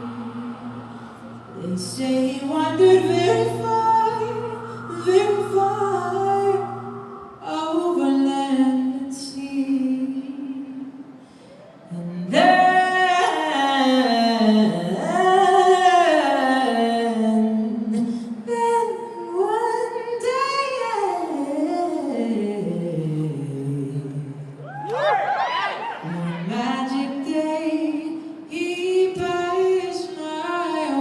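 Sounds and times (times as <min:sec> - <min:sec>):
wordless high singing: 0:00.0 - 0:10.5.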